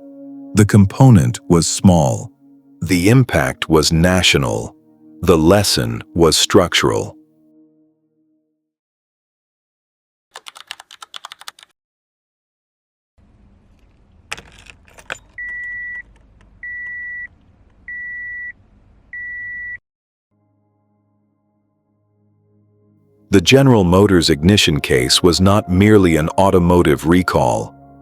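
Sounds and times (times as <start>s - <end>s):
car keys jangling: 14.3s - 16.3s
dashboard warning chimes: 15.4s - 17.3s, 17.9s - 18.6s, 19.2s - 19.8s
faint low drone: 20.4s - 28.0s.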